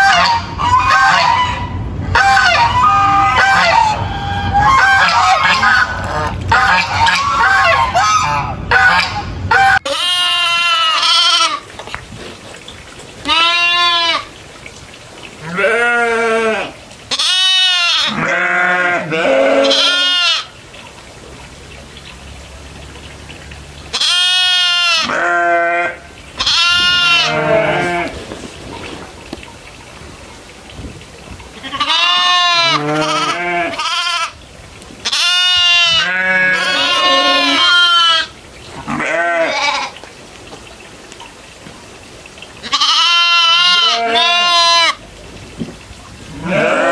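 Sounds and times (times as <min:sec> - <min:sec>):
goats bleating: 0:13.2 - 0:14.3, 0:15.4 - 0:20.5, 0:24.0 - 0:28.2, 0:31.6 - 0:34.4, 0:35.0 - 0:38.3, 0:38.9 - 0:40.0, 0:42.6 - 0:45.0, 0:46.4 - 0:46.9.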